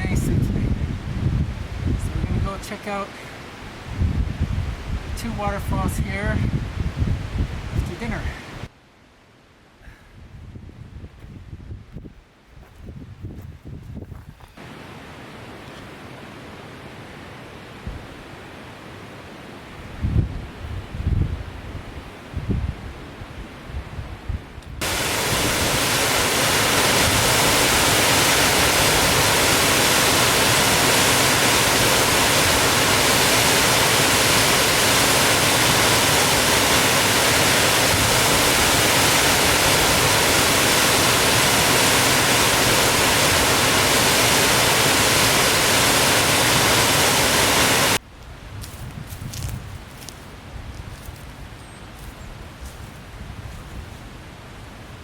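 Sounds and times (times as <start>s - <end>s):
waterfall rushing: 24.8s - 48.0s.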